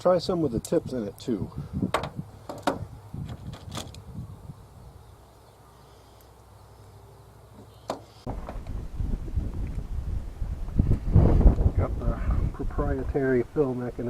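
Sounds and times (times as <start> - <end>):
wind rumbling on microphone: 0.2 - 5.2, 8.3 - 14.0.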